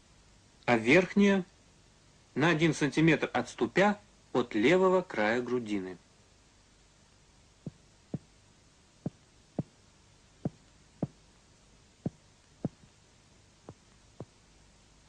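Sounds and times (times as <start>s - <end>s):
finger tapping on chest: 7.6s - 8.3s, 9.0s - 9.7s, 10.4s - 11.2s, 12.0s - 12.9s, 13.7s - 14.4s.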